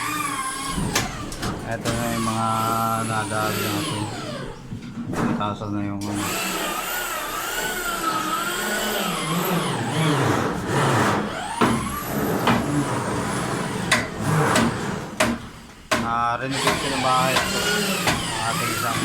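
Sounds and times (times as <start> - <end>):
motor whining: 0.0 - 4.8, 6.0 - 14.7, 16.5 - 19.0
sharp knocks: 13.9 - 18.4.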